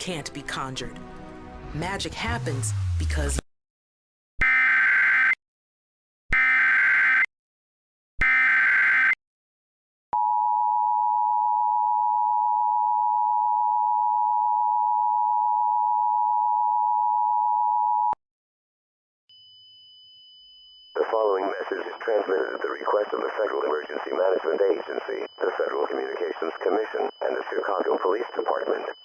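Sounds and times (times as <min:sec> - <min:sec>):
screechy digital data tones: 0:21.0 - 0:29.0
two-tone attention signal: 0:21.0 - 0:29.0.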